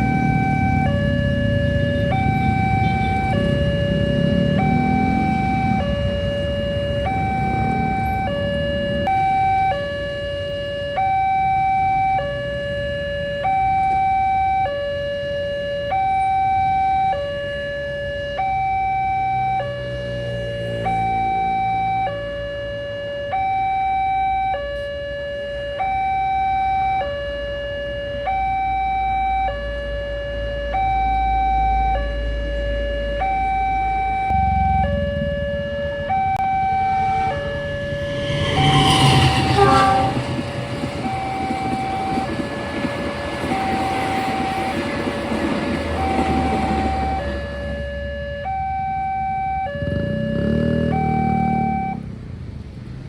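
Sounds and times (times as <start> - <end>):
level crossing alarm two-tone: 0.0 - 52.0
train rumble: 34.3 - 48.0.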